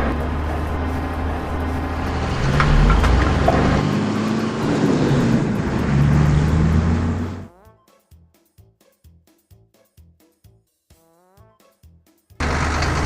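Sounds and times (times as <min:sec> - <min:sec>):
heavy vehicle engines droning: 0:00.0 - 0:07.5, 0:12.4 - 0:13.0.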